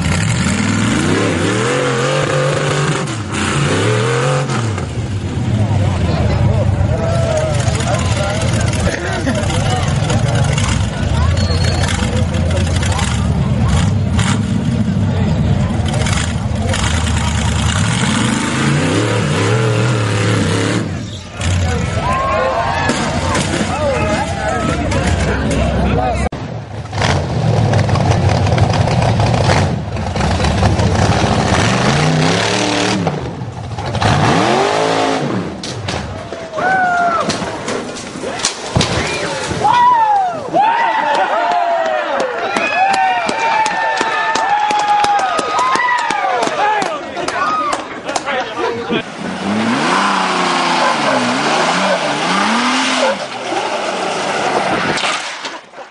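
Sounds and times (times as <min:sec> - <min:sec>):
off-road vehicle engine revving: 0:00.0 - 0:36.2, 0:48.9 - 0:55.1.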